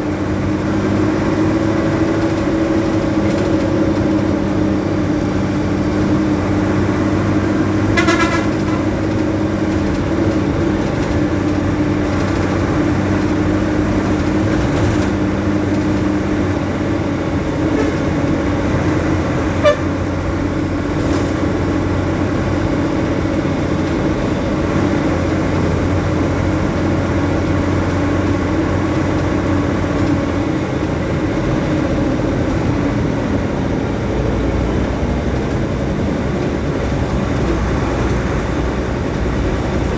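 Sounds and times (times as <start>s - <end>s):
road traffic: 0.0s - 39.9s
vehicle engine running: 0.0s - 39.9s
short horn toot: 7.9s - 9.0s, 19.6s - 20.0s.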